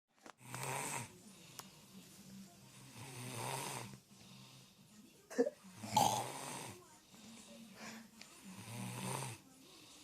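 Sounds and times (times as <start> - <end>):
quiet breathing: 0.2 - 5.3, 6.4 - 10.0
man snoring: 0.4 - 1.1, 2.9 - 4.0, 5.8 - 6.8, 8.5 - 9.4.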